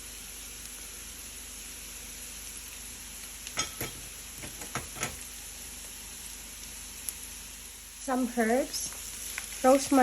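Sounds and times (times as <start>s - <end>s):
onion and garlic sizzling in a pan: 0.0s - 10.0s.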